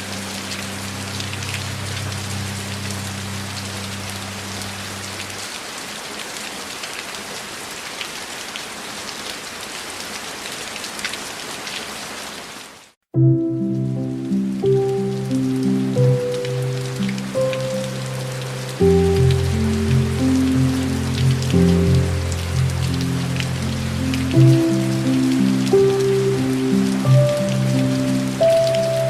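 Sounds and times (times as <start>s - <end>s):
rain drops pattering: 0.0s - 29.0s
music: 13.2s - 29.0s.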